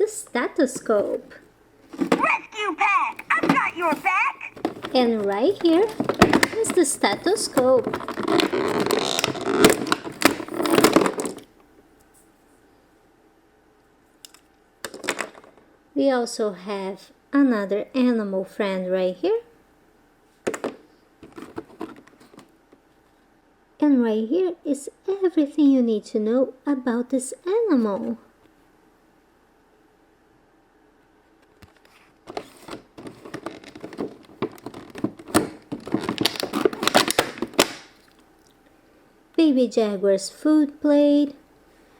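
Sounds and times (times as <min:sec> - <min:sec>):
hands handling plastic toy pieces: 0:01.9 - 0:11.5, 0:31.7 - 0:38.2.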